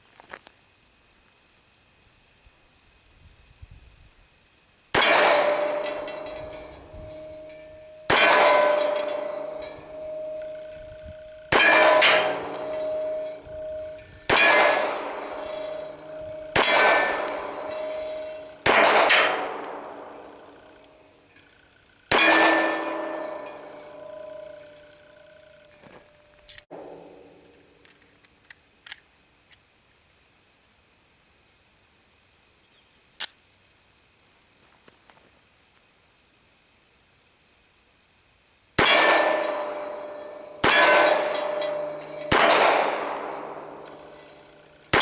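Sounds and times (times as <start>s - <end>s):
pistol shots: 5.0s - 20.8s, 22.1s - 24.9s, 26.7s - 27.6s, 38.8s - 45.0s
steel plate clanging: 5.0s - 20.8s, 22.1s - 27.6s, 38.8s - 45.0s.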